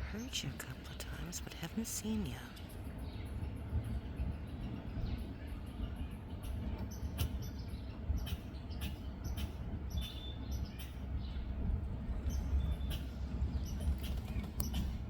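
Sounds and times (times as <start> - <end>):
steady low rumble: 0.0 - 15.0
bird chirps: 3.0 - 11.5.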